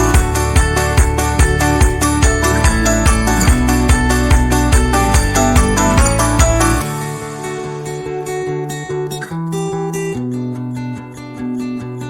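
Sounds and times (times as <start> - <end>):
background music with bell-like notes: 0.0 - 8.3.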